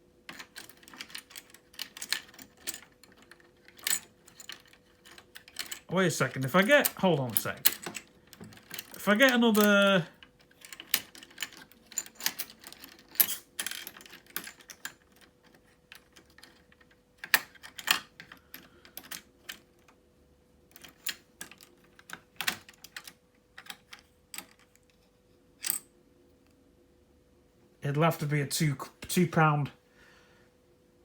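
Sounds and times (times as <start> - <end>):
faint steady hum: 0.0 - 31.0
toy coins clicking and rattling: 0.3 - 19.8.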